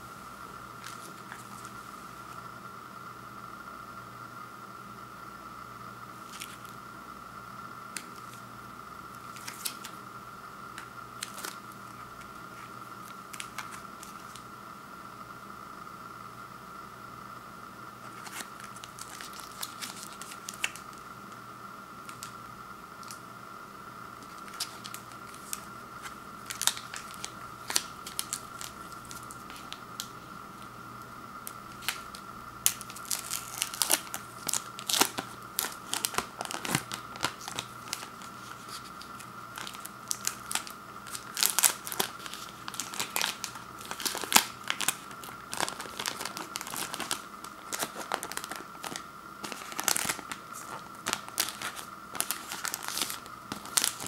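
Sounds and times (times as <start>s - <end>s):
plastic wrapper crinkling and tearing: 6.2s - 6.7s, 9.1s - 10.0s, 10.8s - 14.4s, 18.0s - 21.0s, 22.0s - 22.4s, 24.2s - 30.7s, 31.4s - 54.0s.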